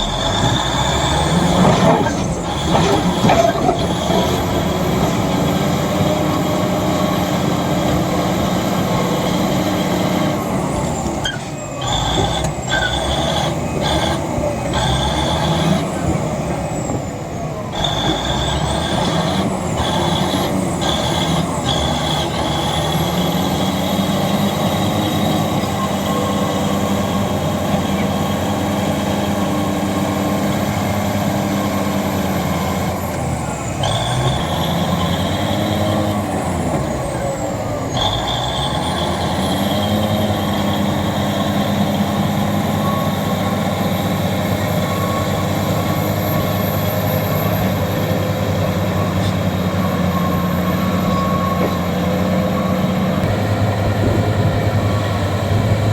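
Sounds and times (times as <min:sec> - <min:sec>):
bulldozer diesel engine running: 0:00.0 - 0:55.9.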